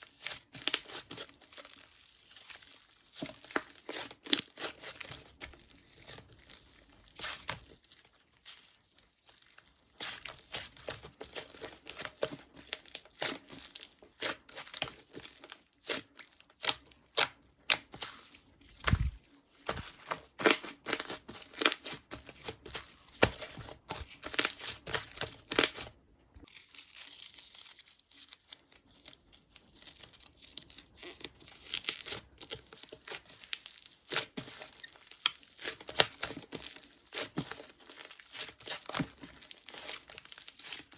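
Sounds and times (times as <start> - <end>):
crinkly material crackling and tearing: 26.4 - 40.9.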